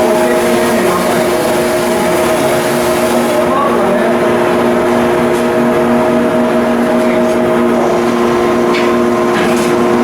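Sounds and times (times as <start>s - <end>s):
machinery droning: 0.0s - 4.9s.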